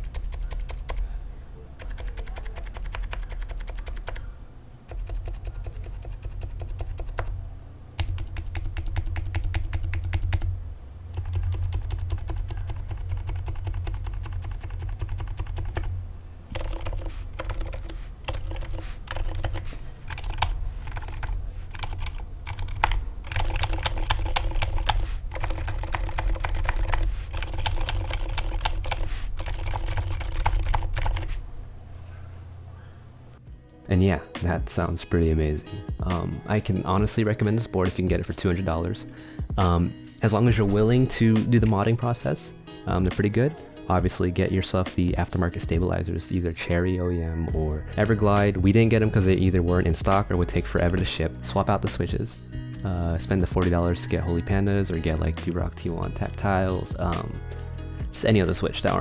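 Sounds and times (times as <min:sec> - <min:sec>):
quiet mechanical keyboard typing: 0:00.0 - 0:01.2, 0:01.8 - 0:07.4, 0:08.0 - 0:10.5, 0:11.1 - 0:31.4.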